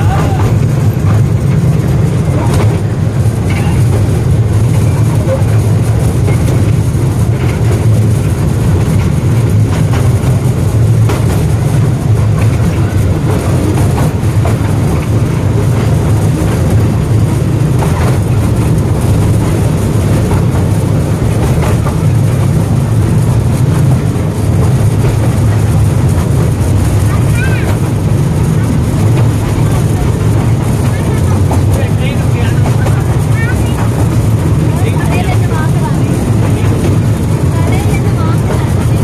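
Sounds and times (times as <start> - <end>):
toy train rumbling: 0.0 - 39.0.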